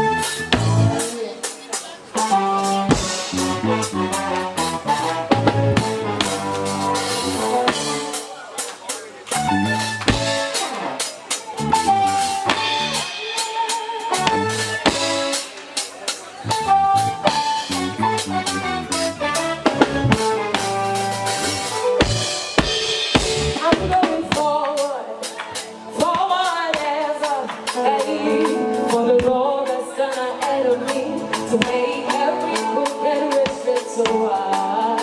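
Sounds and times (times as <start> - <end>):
person singing: 0.0 - 5.2, 23.3 - 35.0
drum kit rimshots: 0.0 - 35.0
live band playing gospel: 0.0 - 35.0.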